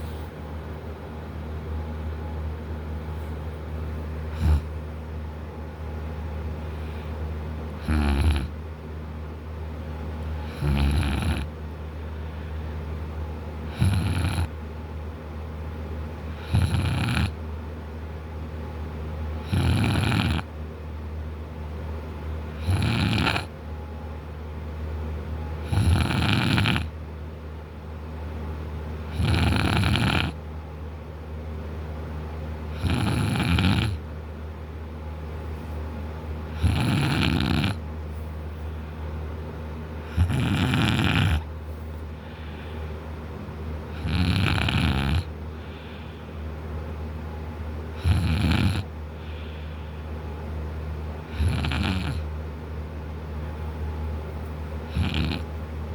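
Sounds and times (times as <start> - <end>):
man snoring: 4.3 - 4.7, 7.8 - 8.6, 10.4 - 11.5, 13.7 - 14.5, 16.3 - 17.4, 19.4 - 20.5, 22.6 - 23.5, 25.6 - 26.9, 29.1 - 30.4, 32.7 - 34.0, 36.5 - 37.8, 40.0 - 41.5, 43.9 - 45.9, 47.9 - 49.6, 51.3 - 52.3, 54.9 - 55.5.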